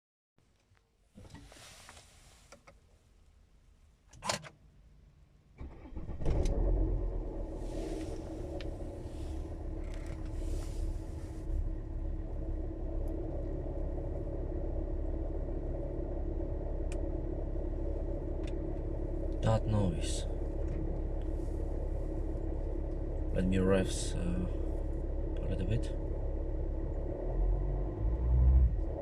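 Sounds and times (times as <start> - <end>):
car engine cranking and idling: 5.3 - 29.0
friction sound in engine idle: 6.0 - 28.0.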